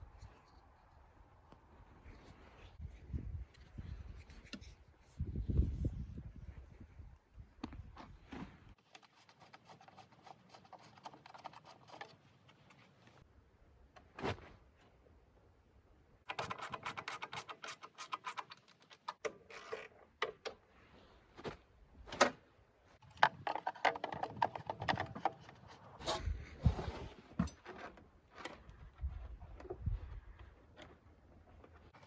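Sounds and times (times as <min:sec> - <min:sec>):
hand tools clicking and rattling: 0:16.3 - 0:19.3, 0:23.0 - 0:25.8.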